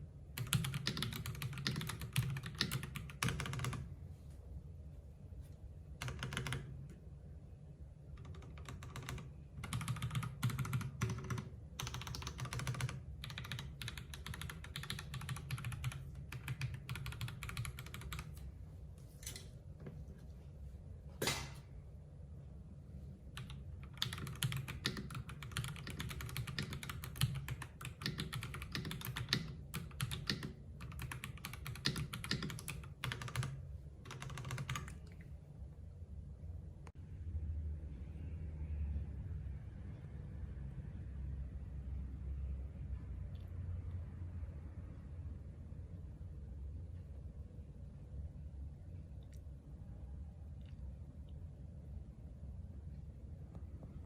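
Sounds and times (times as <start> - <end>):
mechanical keyboard typing: 0.4 - 3.9, 6.0 - 7.0, 8.1 - 18.4, 23.3 - 35.2.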